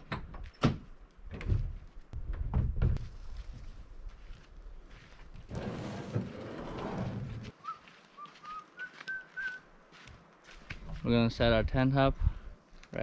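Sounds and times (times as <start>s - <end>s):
rustling noise: 3.0s - 11.0s
short whistled notes: 7.6s - 9.6s.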